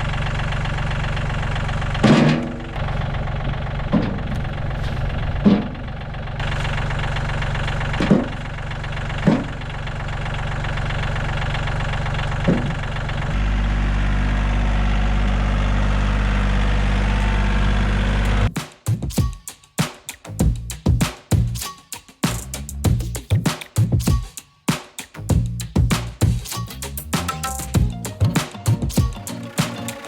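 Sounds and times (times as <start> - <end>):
diesel engine running: 0.0 - 18.5.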